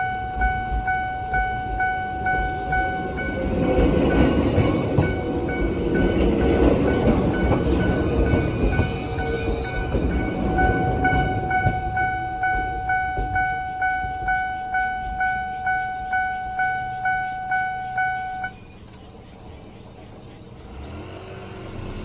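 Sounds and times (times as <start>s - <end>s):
level crossing warning alarm ringing: 0.0s - 19.4s
low train rumble: 0.0s - 22.0s
vehicle engine: 20.2s - 22.0s.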